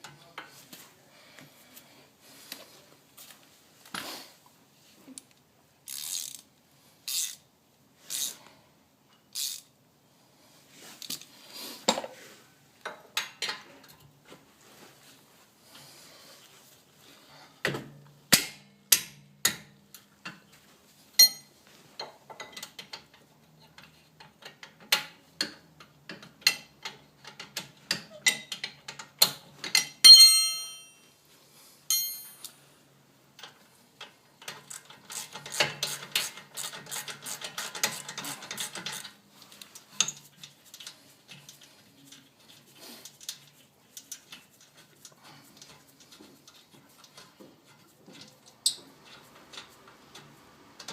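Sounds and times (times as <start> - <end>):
metal tools clinking and knocking: 21.2 - 21.5, 26.4 - 31.0, 31.9 - 32.6, 48.1 - 49.2.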